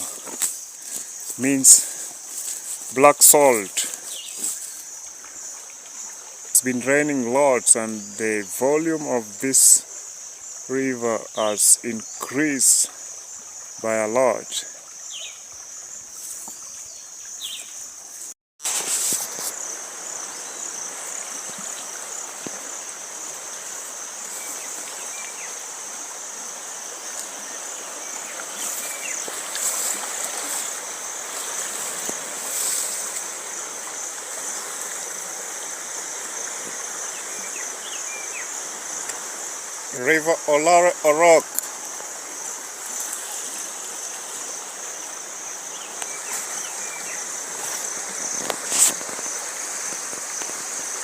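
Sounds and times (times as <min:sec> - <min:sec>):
river rushing: 0:00.0 - 0:16.7, 0:18.7 - 0:51.0
insects trilling: 0:00.0 - 0:51.0.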